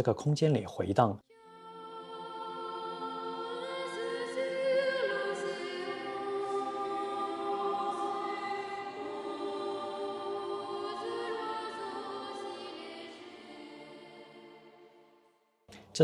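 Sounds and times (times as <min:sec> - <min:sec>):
choir singing held chords: 0:01.3 - 0:15.4.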